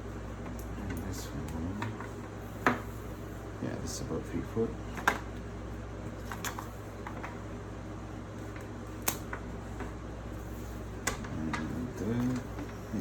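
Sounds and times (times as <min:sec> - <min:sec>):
steady low hum: 0:00.0 - 0:13.0
cables and packaging clicks and rustles: 0:00.1 - 0:02.9, 0:06.1 - 0:07.5, 0:08.4 - 0:13.0.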